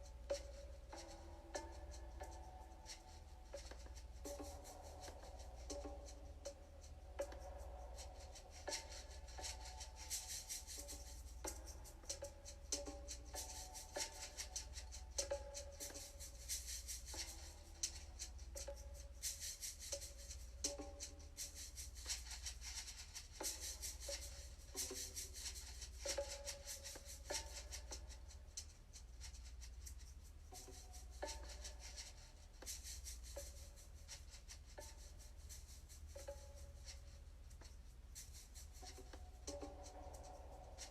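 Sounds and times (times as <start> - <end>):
shaker rattle: 0.0 - 40.9.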